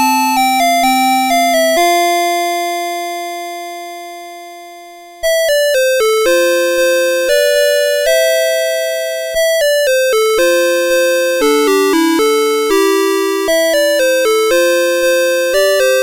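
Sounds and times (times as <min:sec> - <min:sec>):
electronic alarm clock melody: 0:05.2 - 0:16.0.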